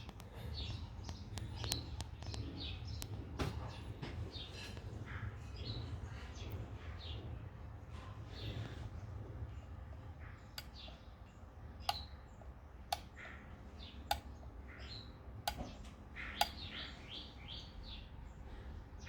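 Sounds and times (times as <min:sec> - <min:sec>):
sharp clicks: 0:00.0 - 0:03.2, 0:12.8 - 0:13.3, 0:13.9 - 0:14.6, 0:15.4 - 0:16.7
birds chirping: 0:00.0 - 0:19.0.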